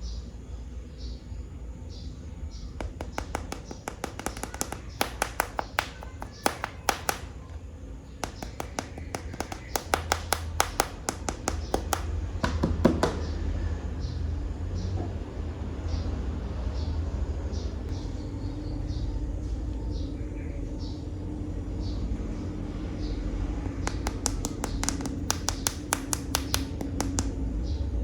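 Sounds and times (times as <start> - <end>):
plastic toy figures clicking: 2.8 - 7.4, 8.2 - 12.1, 23.9 - 27.3.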